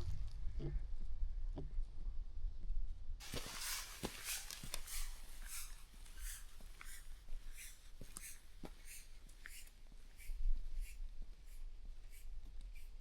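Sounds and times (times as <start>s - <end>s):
footsteps crunching on rough ground: 3.2s - 8.8s.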